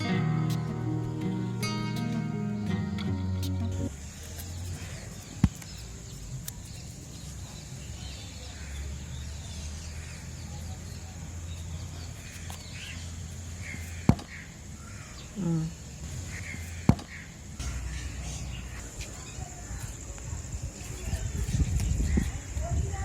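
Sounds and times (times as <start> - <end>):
low hum: 0.0 - 4.0
steady high hiss: 0.0 - 7.7
faint birds chirping: 0.0 - 23.0.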